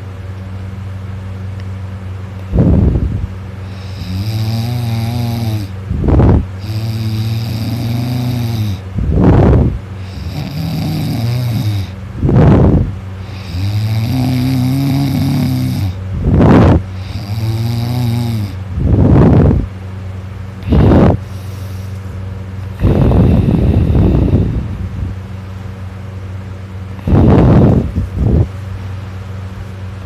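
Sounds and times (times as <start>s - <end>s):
person snoring loudly: 3.7s - 19.6s, 20.6s - 21.9s, 22.7s - 24.8s, 27.0s - 28.4s.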